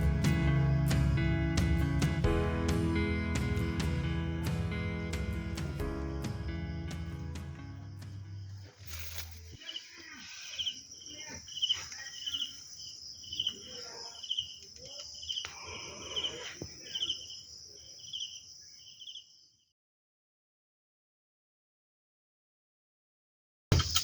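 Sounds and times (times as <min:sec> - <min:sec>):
background music: 0:00.0 - 0:08.6
cricket chirping: 0:05.0 - 0:19.7, 0:23.8 - 0:24.0
insects trilling: 0:07.8 - 0:19.6.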